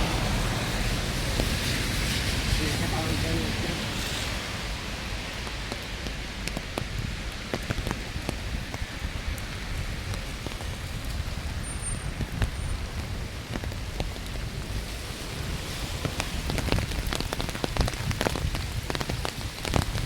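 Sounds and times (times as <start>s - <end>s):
low rumble: 0.0s - 5.1s
rain falling: 0.0s - 20.0s
raindrop impacts ticking: 0.0s - 20.0s.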